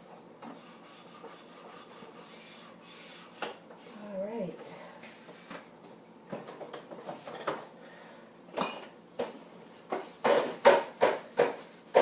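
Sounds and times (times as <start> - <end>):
jars and bottles set down: 8.5 - 9.4.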